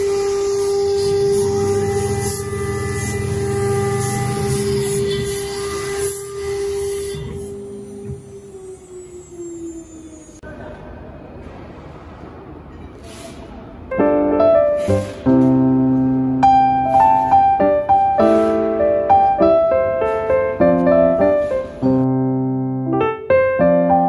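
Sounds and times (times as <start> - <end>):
faint mechanical noise: 0.0 - 22.1
electric piano chords: 13.9 - 24.0.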